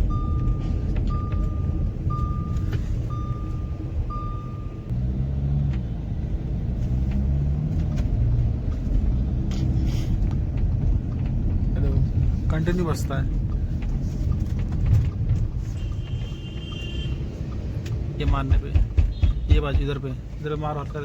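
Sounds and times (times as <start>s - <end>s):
dashboard warning chime beeping: 0.0s - 4.9s
road and engine rumble: 0.0s - 21.0s.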